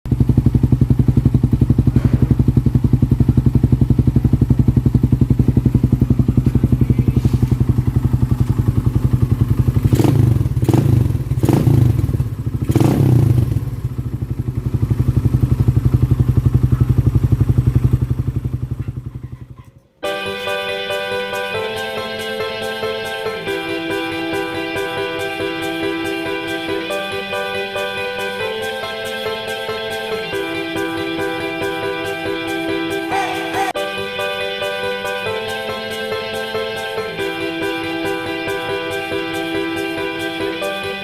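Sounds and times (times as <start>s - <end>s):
motorcycle engine idling and revving: 0.1s - 20.0s.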